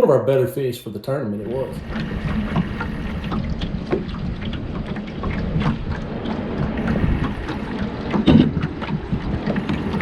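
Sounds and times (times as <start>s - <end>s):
water splashes: 1.3s - 10.0s
wind rumbling on microphone: 1.4s - 10.0s
small knocks: 8.1s - 9.8s.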